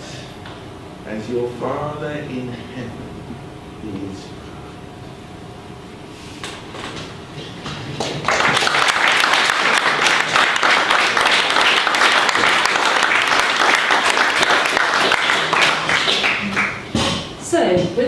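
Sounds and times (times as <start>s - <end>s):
audience applauding: 8.0s - 16.9s.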